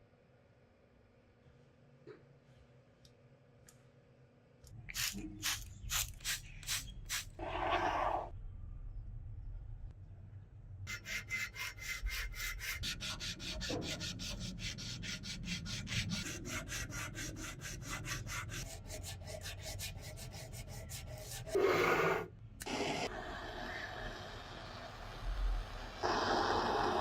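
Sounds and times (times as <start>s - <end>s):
hand sanding strokes: 10.9s - 21.6s.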